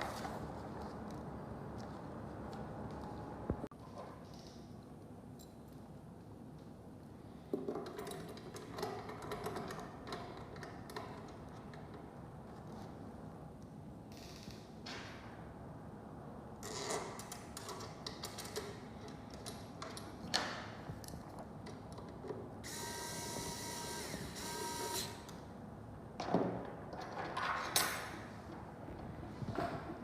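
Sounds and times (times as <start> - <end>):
small motor whirring: 22.7 - 25.2.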